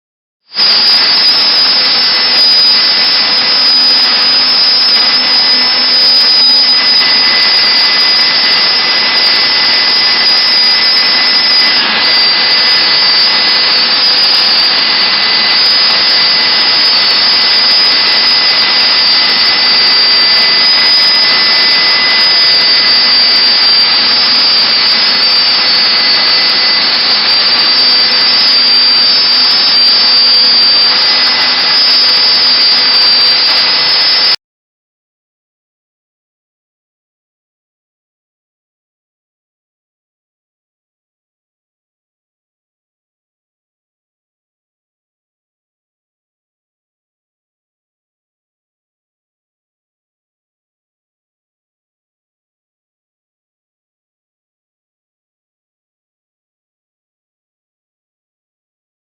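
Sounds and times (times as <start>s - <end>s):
cnc router spindle whine: 0.5s - 34.4s
router milling wood: 0.5s - 34.4s.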